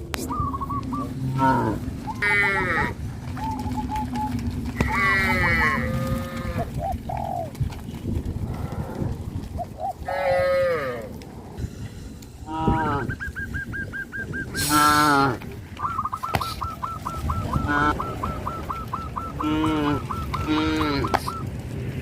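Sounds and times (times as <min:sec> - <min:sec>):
cattle mooing: 0:01.2 - 0:03.0, 0:04.7 - 0:06.8, 0:10.0 - 0:11.2, 0:12.4 - 0:13.1, 0:14.6 - 0:15.4, 0:19.4 - 0:21.2.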